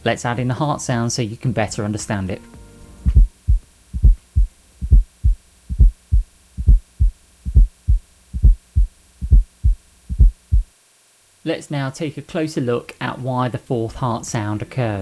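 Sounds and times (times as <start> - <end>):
faint steady hum: 0.0 - 15.0
heartbeat thumps: 3.0 - 10.7.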